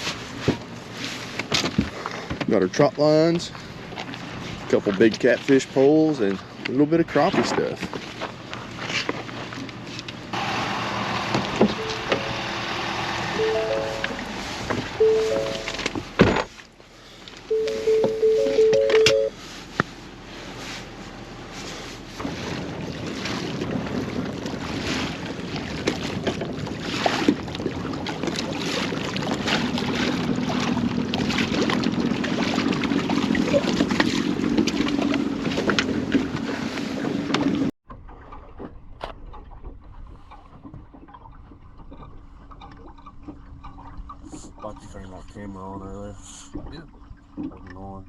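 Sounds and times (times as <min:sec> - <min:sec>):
boat motor: 0:00.0 - 0:48.0
water noise: 0:00.0 - 0:48.0
wind buffeting microphone: 0:22.2 - 0:37.7.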